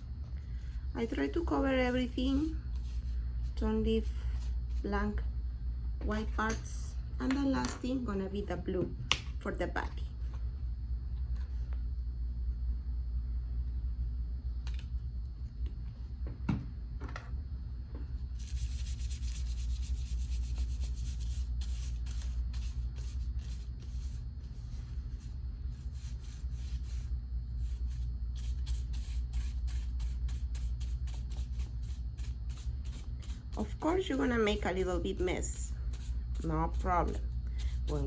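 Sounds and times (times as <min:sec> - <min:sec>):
paintbrush stroking paper plate: 0:01.0 - 0:04.9, 0:18.4 - 0:38.0.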